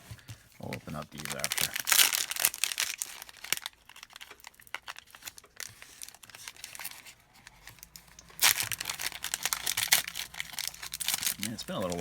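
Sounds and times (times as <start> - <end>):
foil wrapper crinkling: 0.2 - 12.0
cards being handled: 5.1 - 12.0.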